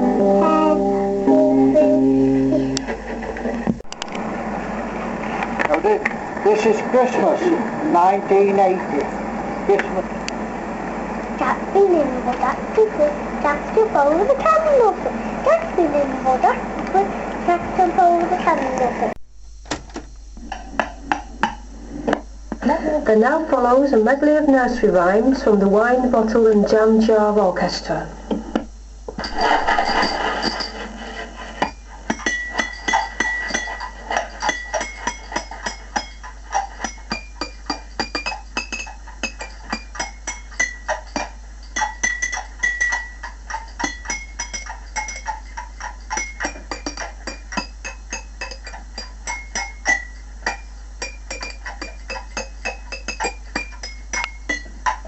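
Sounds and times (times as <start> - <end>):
steady low hum: 0.0 - 55.0
glass bottles and jars clinking tunes: 32.1 - 55.0.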